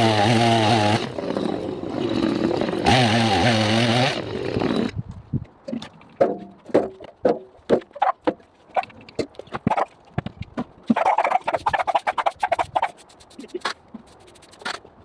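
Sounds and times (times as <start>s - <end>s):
irregular knocks and clatters: 5.6s - 11.0s.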